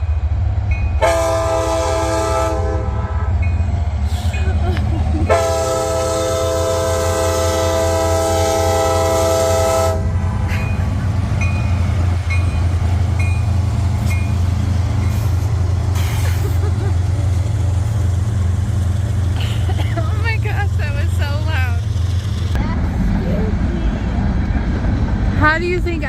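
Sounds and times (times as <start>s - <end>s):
train rumble: 0.0s - 26.0s
locomotive air horn blast: 1.0s - 3.3s, 5.3s - 10.4s.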